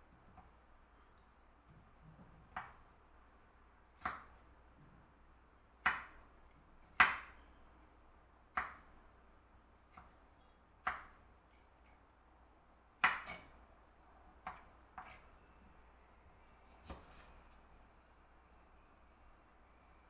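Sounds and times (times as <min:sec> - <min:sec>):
knife chopping on cutting board: 0:07.0 - 0:07.3, 0:13.0 - 0:13.5, 0:14.4 - 0:15.2, 0:16.7 - 0:17.3.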